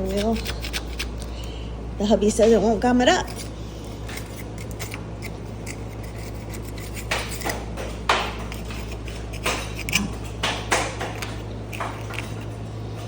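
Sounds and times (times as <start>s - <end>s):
steady low hum: 0.0s - 13.0s
metal scraper scraping steel: 3.2s - 7.6s.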